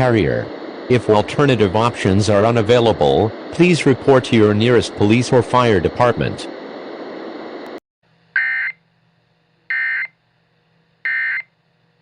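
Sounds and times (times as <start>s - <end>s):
digital data tone buzzing bursts: 9.7s - 10.1s.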